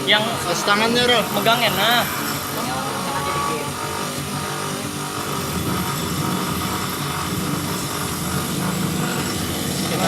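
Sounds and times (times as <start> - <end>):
electric grinder whine: 0.0 - 10.0.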